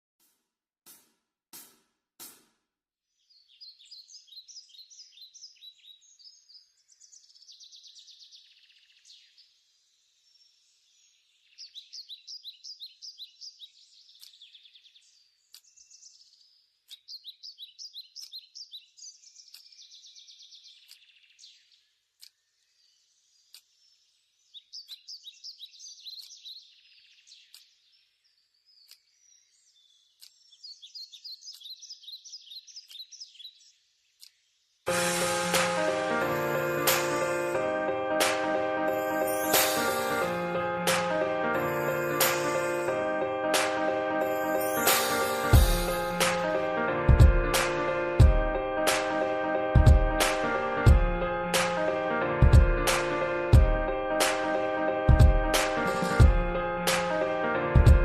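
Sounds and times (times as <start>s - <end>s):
birds singing high trills: 3.2s - 9.6s, 10.4s - 22.4s, 23.4s - 33.8s, 44.2s - 46.2s.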